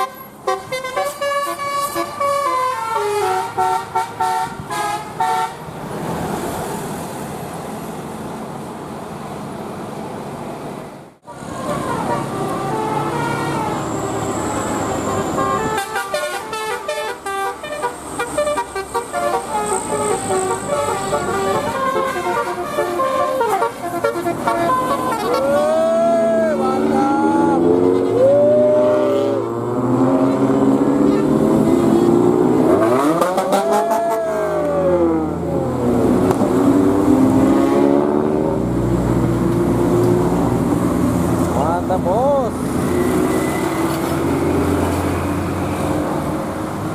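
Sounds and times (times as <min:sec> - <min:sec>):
multi-tone bus horn playing a tune: 0:00.0 - 0:05.7, 0:11.3 - 0:25.8, 0:26.8 - 0:28.4
bus engine revving: 0:09.4 - 0:46.9.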